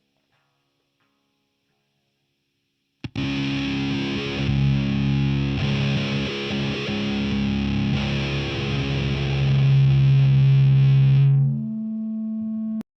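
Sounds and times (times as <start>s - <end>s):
distorted electric guitar riff: 3.0s - 12.8s.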